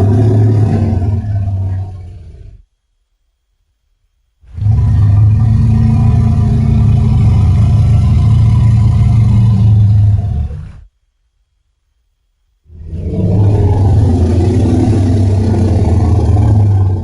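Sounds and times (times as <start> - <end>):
low creature roar: 4.5 - 10.9, 12.7 - 17.0.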